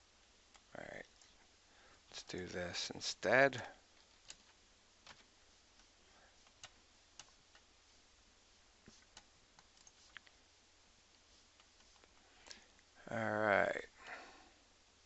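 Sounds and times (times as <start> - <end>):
computer mouse clicks: 4.0 - 7.7, 8.9 - 10.3.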